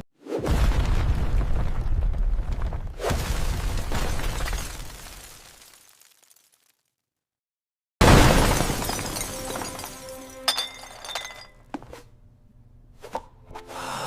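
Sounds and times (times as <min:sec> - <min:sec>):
glasses shattering crash: 0:08.0 - 0:11.7
glass pieces tinkling: 0:08.8 - 0:11.6.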